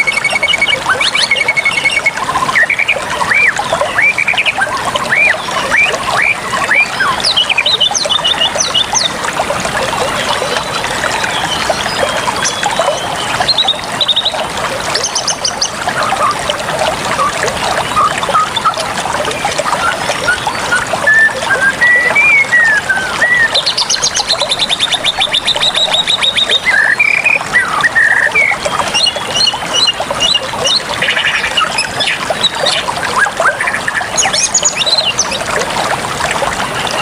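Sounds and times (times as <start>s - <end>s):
water trickling: 0.0s - 37.0s
birds chirping: 10.0s - 35.4s.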